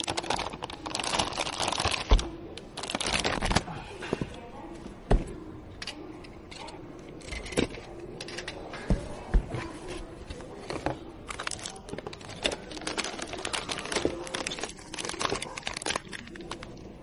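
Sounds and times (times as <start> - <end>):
packaging crinkling and rustling: 0.0 - 3.7, 9.6 - 17.0.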